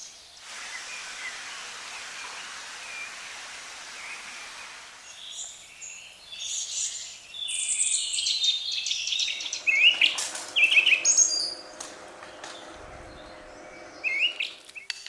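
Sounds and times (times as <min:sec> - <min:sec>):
songbirds chirping and singing: 0:05.1 - 0:15.0.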